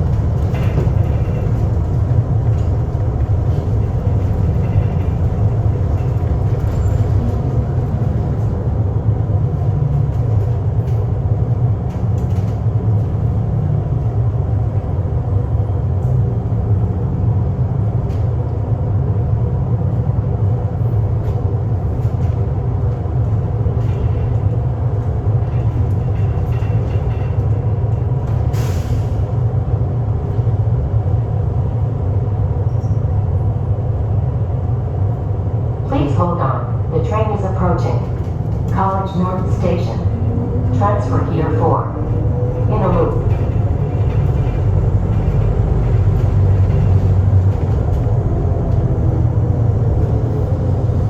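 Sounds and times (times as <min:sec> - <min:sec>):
rail car rumble: 0:00.0 - 0:51.0.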